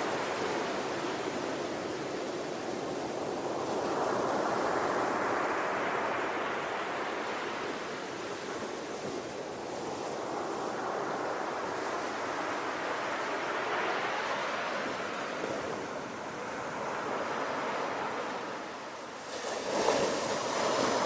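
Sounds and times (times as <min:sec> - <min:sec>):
ocean waves breaking on shore: 0:00.0 - 0:21.0.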